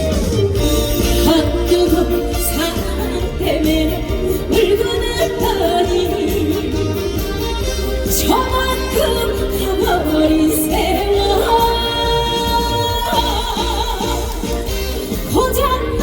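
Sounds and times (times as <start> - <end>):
live band playing trot music: 0.0 - 16.0.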